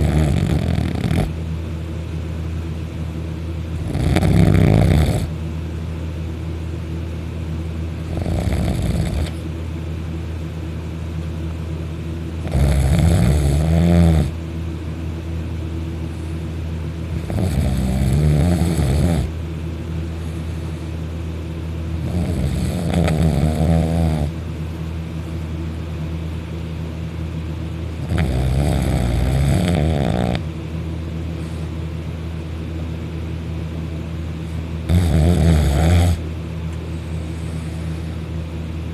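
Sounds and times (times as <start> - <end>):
loud snoring: 0.0 - 1.4, 3.8 - 5.3, 8.1 - 9.4, 12.4 - 14.4, 17.1 - 19.3, 22.0 - 24.4, 28.0 - 30.5, 34.8 - 36.2
steady low hum: 0.0 - 38.9.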